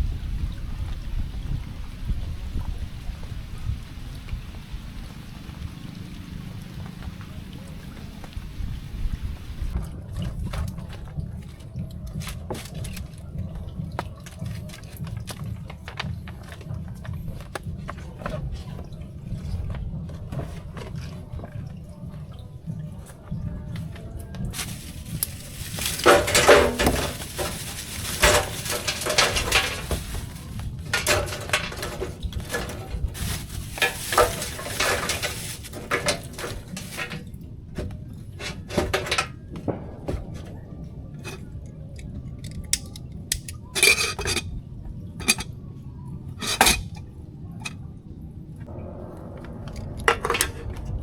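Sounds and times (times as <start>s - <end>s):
utensil scraping and clinking pot: 24.6s - 37.3s, 41.2s - 41.5s, 42.4s - 44.5s, 45.1s - 45.6s, 46.4s - 47.8s.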